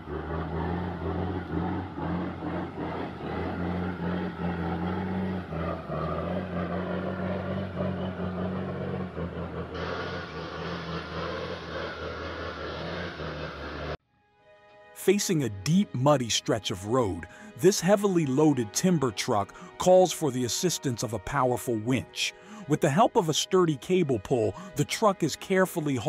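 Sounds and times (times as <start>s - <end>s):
truck diesel engine under load: 0.0s - 14.0s.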